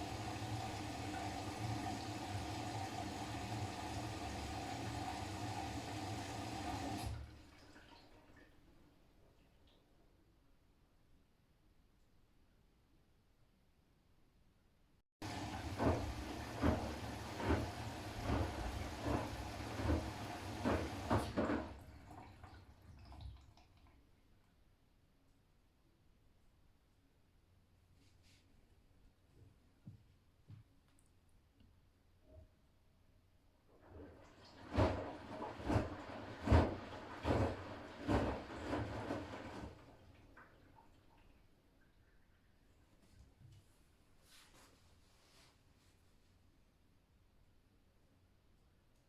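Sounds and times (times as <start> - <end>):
washing machine filling with water: 0.0 - 9.0, 15.2 - 24.2, 33.7 - 42.8
faint water trickle: 6.6 - 10.2, 21.7 - 24.7, 39.9 - 44.4.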